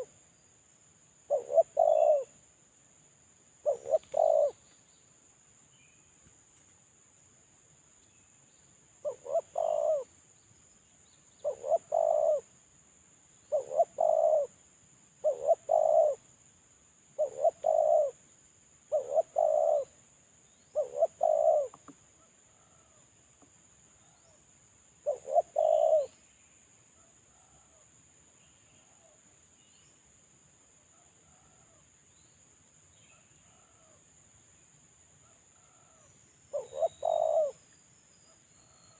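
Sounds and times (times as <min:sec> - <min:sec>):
dove cooing: 0:01.3 - 0:02.4, 0:03.6 - 0:04.6, 0:09.0 - 0:10.1, 0:11.4 - 0:12.5, 0:13.5 - 0:14.6, 0:15.2 - 0:16.2, 0:17.2 - 0:18.2, 0:18.9 - 0:20.0, 0:20.7 - 0:21.9, 0:25.0 - 0:26.2, 0:35.6 - 0:37.6.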